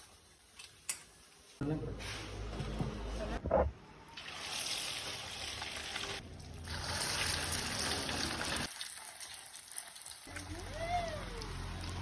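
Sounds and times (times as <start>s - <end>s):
hot oil sizzling: 4.2s - 12.0s.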